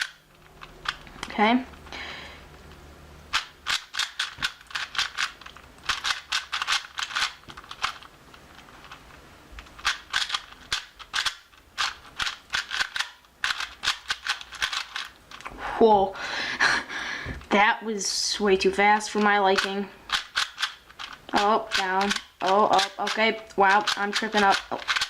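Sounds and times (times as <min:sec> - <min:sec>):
plastic puzzle cube clicking: 0:00.0 - 0:01.9, 0:02.5 - 0:15.5, 0:19.0 - 0:25.0.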